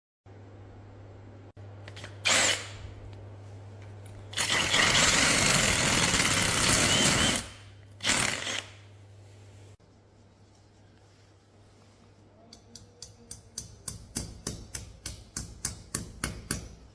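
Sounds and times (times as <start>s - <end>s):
low steady hum: 0.3s - 4.5s
power drill running: 2.2s - 2.8s, 4.3s - 8.8s.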